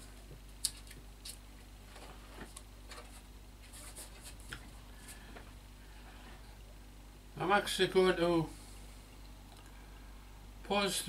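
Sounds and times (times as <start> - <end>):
foam scratching and rubbing: 3.0 - 4.5.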